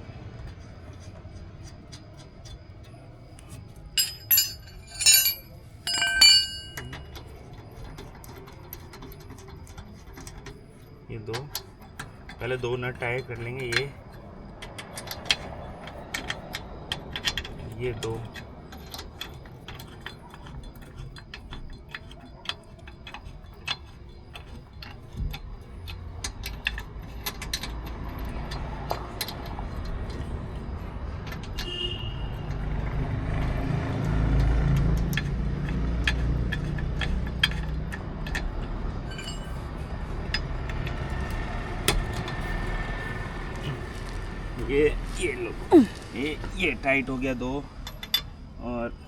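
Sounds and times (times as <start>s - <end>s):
wheel wrench clicking on lug nuts: 0.4s - 44.2s
low vehicle rumble: 27.0s - 48.6s.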